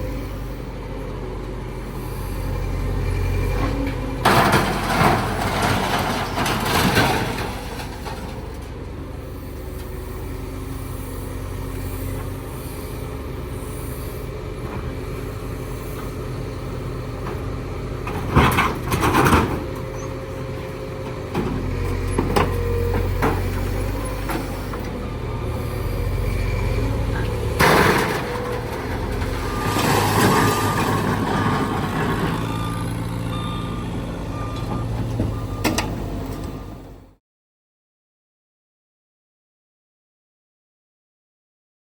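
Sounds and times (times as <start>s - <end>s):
truck engine running: 0.0s - 37.0s.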